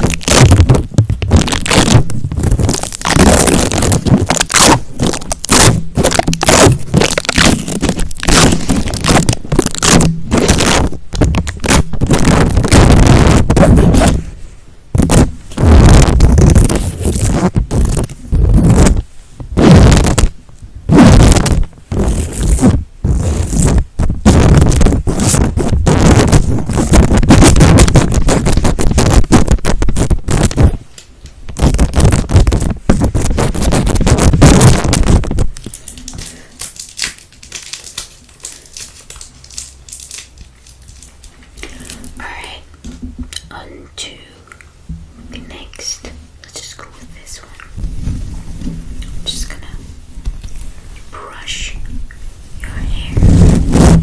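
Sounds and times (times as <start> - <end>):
scratching and scraping on object: 0.0 - 14.4, 15.0 - 20.3, 20.9 - 30.9, 31.5 - 36.4, 45.2 - 52.0, 52.6 - 54.0.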